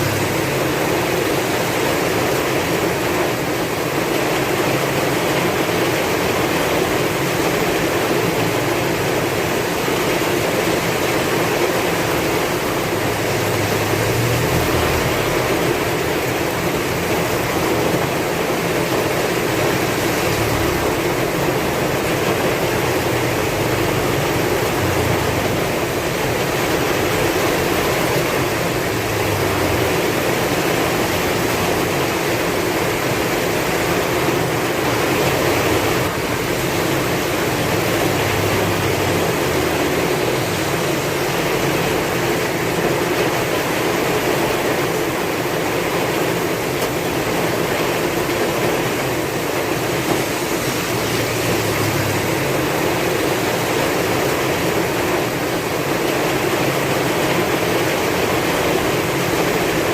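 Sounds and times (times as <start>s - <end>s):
heavy rain in strong wind: 0.0s - 59.9s.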